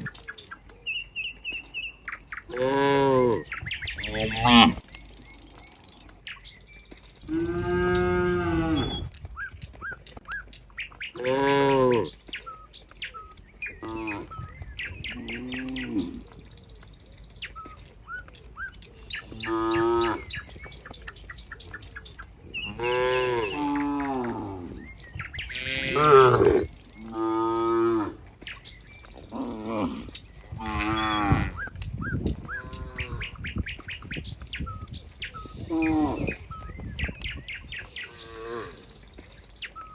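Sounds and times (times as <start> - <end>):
cows mooing: 2.5 - 4.8, 7.3 - 9.1, 11.2 - 12.2, 13.8 - 16.2, 19.2 - 20.5, 22.6 - 28.4, 29.2 - 31.7, 32.5 - 33.4, 35.5 - 36.6, 37.8 - 39.2.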